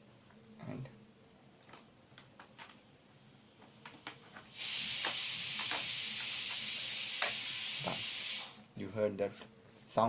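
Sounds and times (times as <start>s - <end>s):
steady high hiss: 0.0s - 10.0s.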